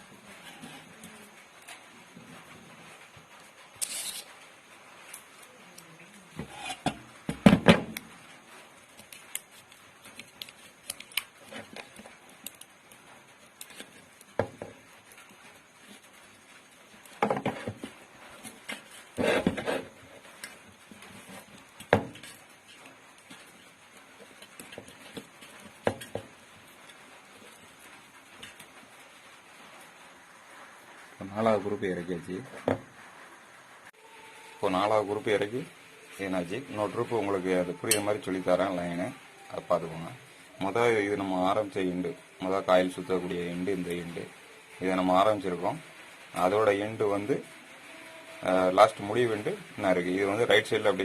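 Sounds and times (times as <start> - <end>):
clicks and rustles of handwork: 8.8 - 29.2.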